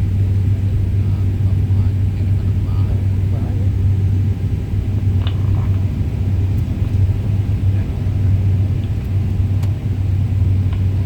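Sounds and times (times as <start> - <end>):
airliner cabin drone: 0.0 - 11.0.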